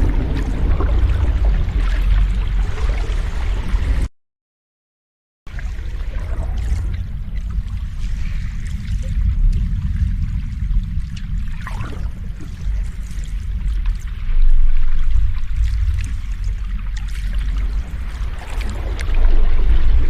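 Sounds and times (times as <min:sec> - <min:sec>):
sea waves washing in: 0:05.5 - 0:20.0.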